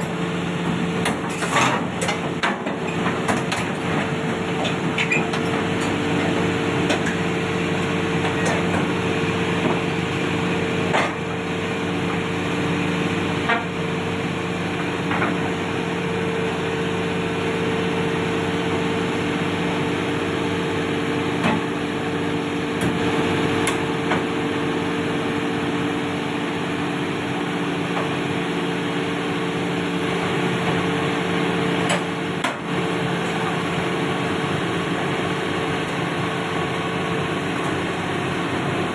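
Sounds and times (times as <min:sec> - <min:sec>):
heavy machinery droning hum: 0:00.0 - 0:38.9.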